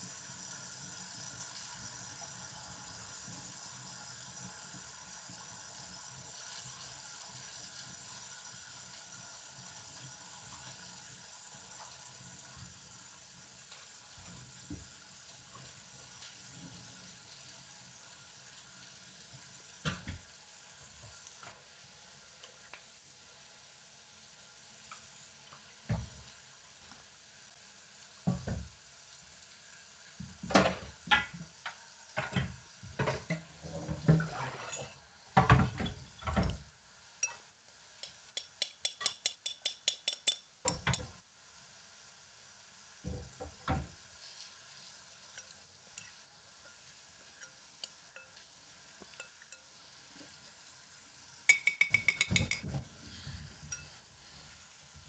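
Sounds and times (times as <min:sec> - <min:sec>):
faint frying sizzle: 0:00.0 - 0:55.0
metal utensils scraping pans: 0:33.0 - 0:36.5, 0:51.5 - 0:52.8
ringing clinks: 0:51.5 - 0:52.6.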